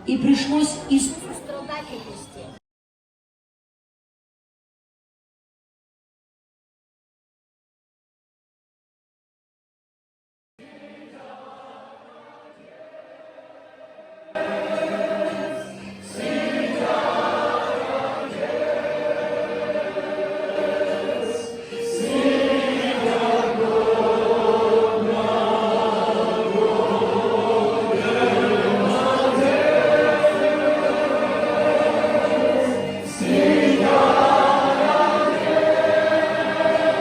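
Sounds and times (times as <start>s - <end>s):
group singing a hymn: 10.6s - 37.0s.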